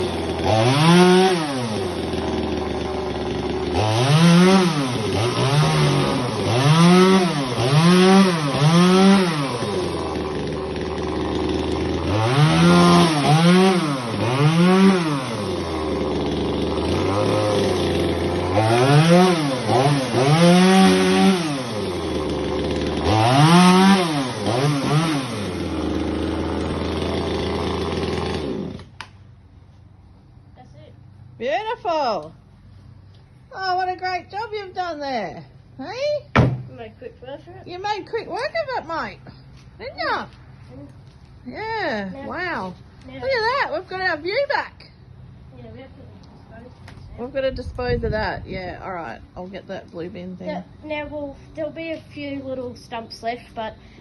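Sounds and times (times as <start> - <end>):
chainsaw idling and revving: 0.0 - 29.1, 37.7 - 45.4.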